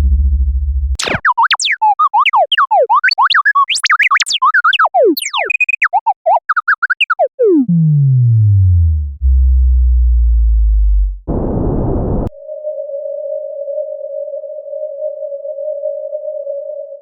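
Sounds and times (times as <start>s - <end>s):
falling tone into low drone: 0.0s - 0.9s, 7.4s - 12.3s
electronic bleeps and chirps: 1.0s - 11.1s.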